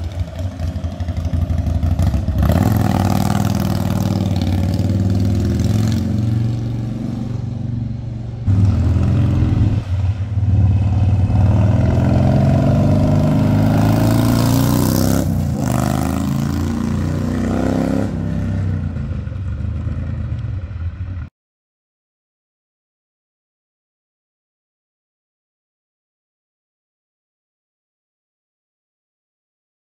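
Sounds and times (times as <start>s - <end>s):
motorcycle engine revving: 0.0s - 21.3s.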